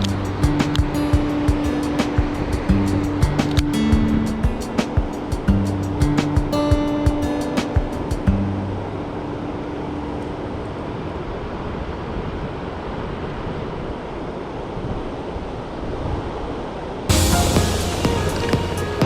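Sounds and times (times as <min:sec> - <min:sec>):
river water rushing: 0:00.0 - 0:19.0.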